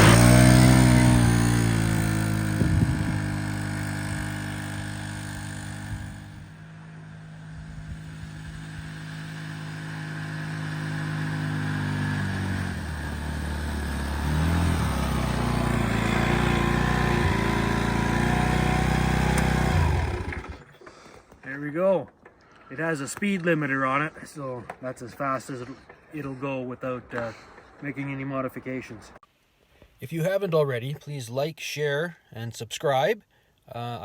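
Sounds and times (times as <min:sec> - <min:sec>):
small engine running: 0:00.0 - 0:21.1.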